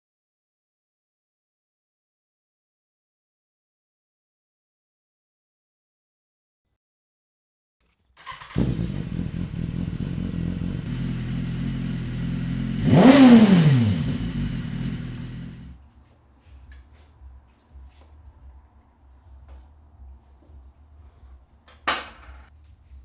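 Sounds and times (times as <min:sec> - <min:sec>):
motorcycle engine idling: 0:08.2 - 0:15.8
motorcycle engine revving: 0:08.2 - 0:15.8.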